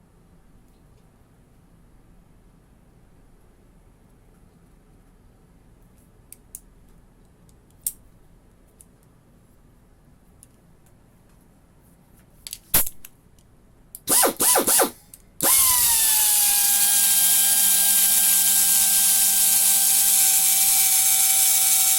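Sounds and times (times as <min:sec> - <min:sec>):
sharp clicks: 0:14.1 - 0:18.7
air grinder whining: 0:14.1 - 0:21.9.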